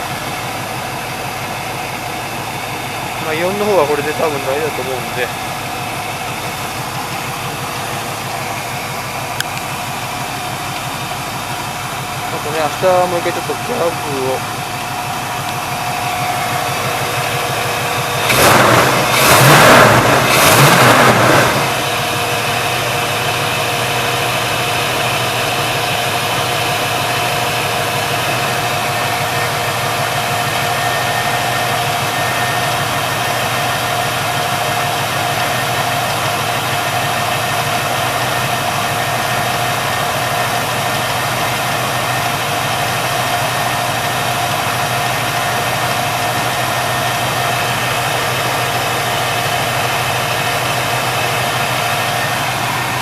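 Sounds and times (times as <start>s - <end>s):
car engine fast idle: 0.0s - 53.0s
engine revving surges: 18.1s - 22.0s.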